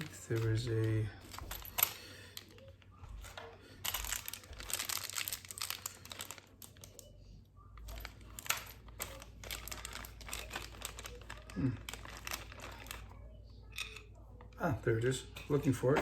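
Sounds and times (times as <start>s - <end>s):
packaging crinkling and rustling: 0.0s - 7.1s, 7.8s - 13.2s.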